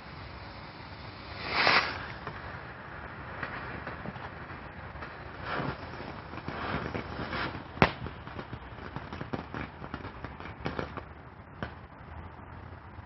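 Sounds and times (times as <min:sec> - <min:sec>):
background noise: 0:00.0 - 0:13.0
firecracker bang: 0:01.1 - 0:02.7, 0:03.3 - 0:11.9.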